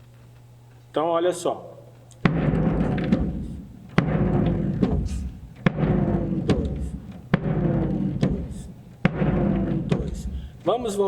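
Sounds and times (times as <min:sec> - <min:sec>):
bass drum beat: 0:02.2 - 0:10.6.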